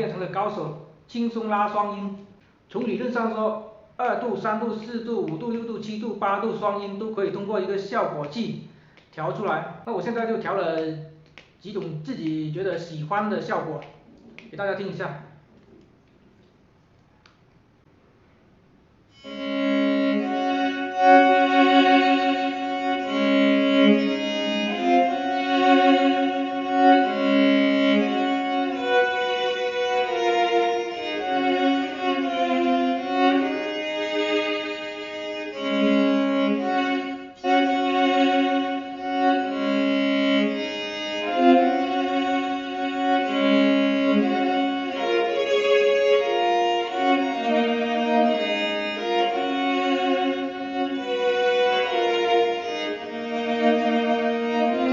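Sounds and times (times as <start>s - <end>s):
bowed electric violin: 19.1s - 54.9s.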